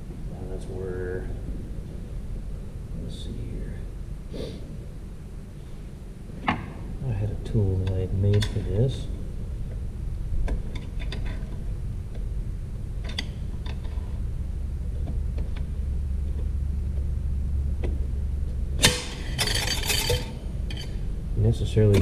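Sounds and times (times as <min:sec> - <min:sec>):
low machine hum: 0:00.0 - 0:22.0
metal tools clicking and knocking: 0:18.8 - 0:21.0.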